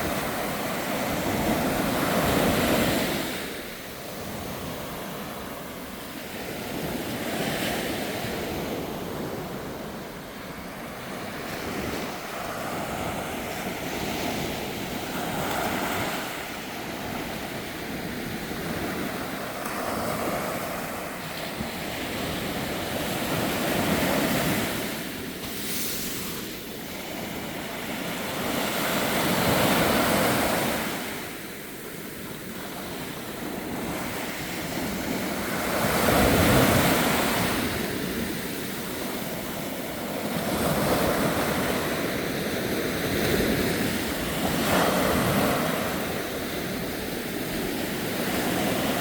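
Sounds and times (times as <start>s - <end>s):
sea waves breaking on beach: 0.0s - 49.0s.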